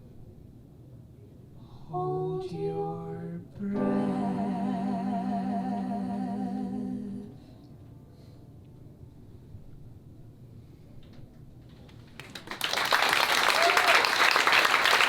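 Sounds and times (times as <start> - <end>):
person singing wordless notes: 1.7 - 7.6.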